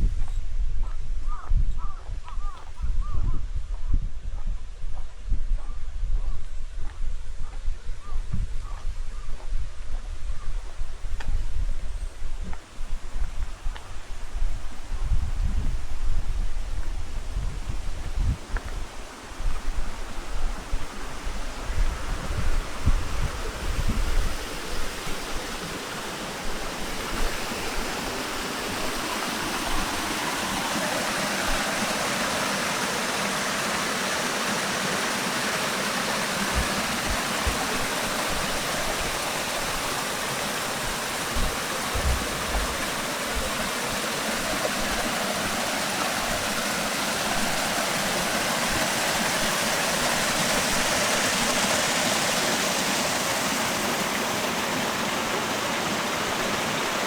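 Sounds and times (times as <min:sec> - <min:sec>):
stream flowing and splashing: 0:10.6 - 0:57.0
low bumps: 0:40.8 - 0:45.6.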